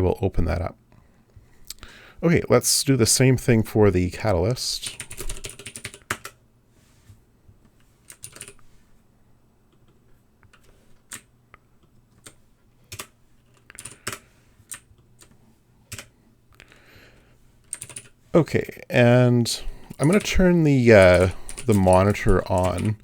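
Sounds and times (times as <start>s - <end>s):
typing on computer keyboard: 4.8s - 6.4s, 8.1s - 8.6s, 9.8s - 11.3s, 12.1s - 15.3s, 15.9s - 16.1s, 17.6s - 18.2s, 20.0s - 20.4s, 21.0s - 23.0s.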